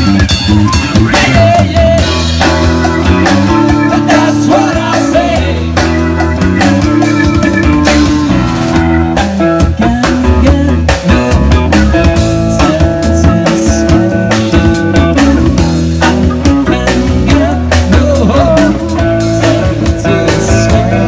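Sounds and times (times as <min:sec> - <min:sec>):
rock band playing: 0:00.0 - 0:21.0
person singing: 0:00.9 - 0:07.4, 0:09.5 - 0:21.0.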